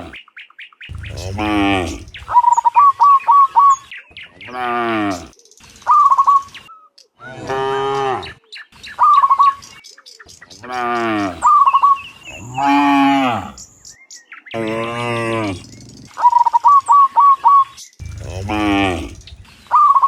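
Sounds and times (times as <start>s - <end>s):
bird chirping: 0.2s - 7.2s, 8.0s - 20.0s
cattle mooing: 0.9s - 2.4s, 12.4s - 13.6s, 18.0s - 19.4s.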